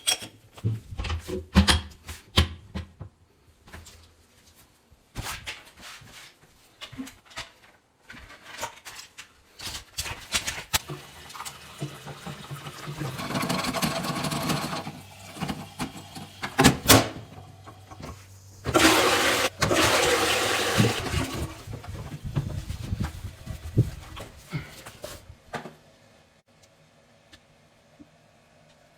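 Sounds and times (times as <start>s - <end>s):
toilet flush water rushing: 10.8s - 21.8s.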